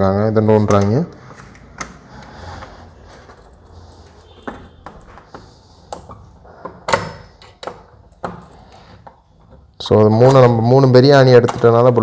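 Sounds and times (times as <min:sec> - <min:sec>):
screwdriver and lock parts clicking: 0:06.9 - 0:08.7.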